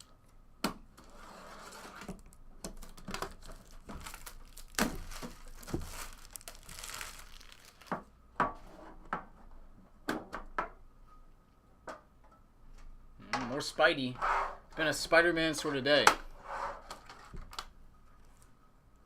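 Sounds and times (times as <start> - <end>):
wrapper crinkling and tearing: 2.8 - 8.1.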